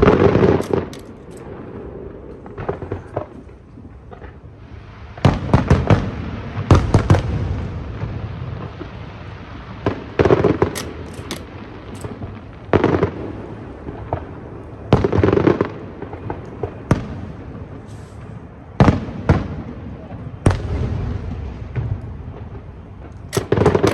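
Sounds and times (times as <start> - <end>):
fireworks bursting: 23.4 - 23.9.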